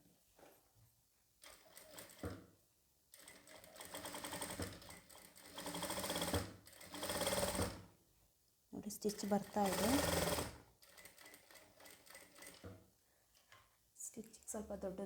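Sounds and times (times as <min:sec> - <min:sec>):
sewing machine stitching: 0:03.2 - 0:07.8, 0:09.1 - 0:12.8.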